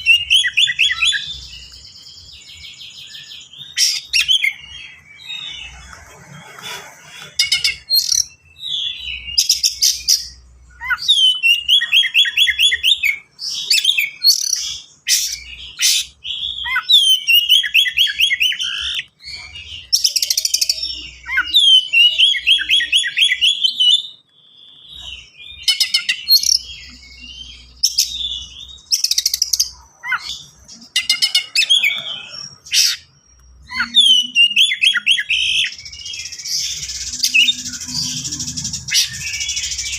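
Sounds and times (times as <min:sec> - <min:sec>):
bird singing rapid phrases: 0:00.0 - 0:39.9.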